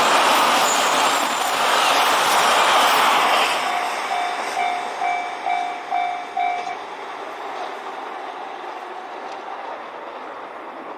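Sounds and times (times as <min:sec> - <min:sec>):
diesel train running: 0:00.0 - 0:10.9
level crossing warning bell: 0:03.7 - 0:06.8.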